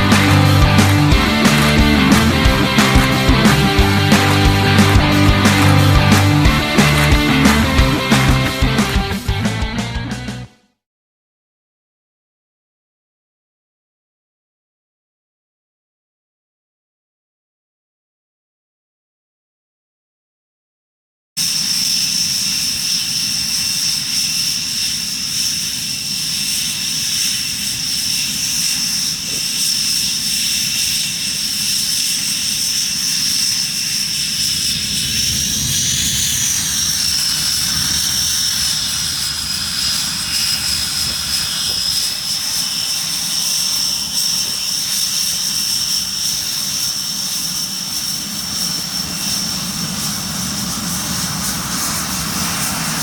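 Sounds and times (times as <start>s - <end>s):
jet engines whining: 0.0s - 10.2s, 21.4s - 53.0s.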